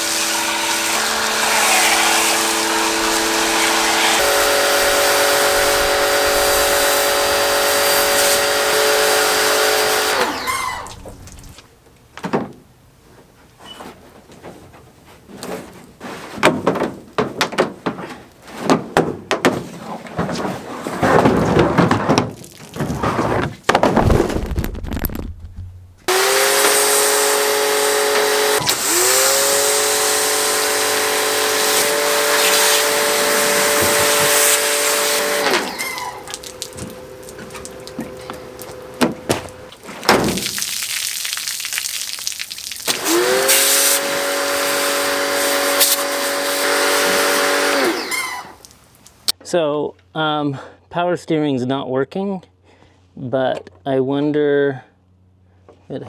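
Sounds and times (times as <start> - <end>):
pressure washer motor whining: 0.0 - 11.6, 26.1 - 40.1, 42.9 - 49.3
water spray hiss: 0.0 - 11.6, 28.4 - 47.9
knocking and scraping: 13.2 - 26.1, 35.4 - 40.6.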